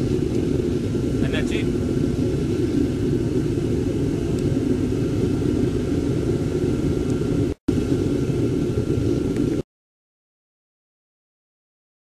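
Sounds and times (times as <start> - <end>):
gas furnace burner rumbling: 0.0 - 9.6.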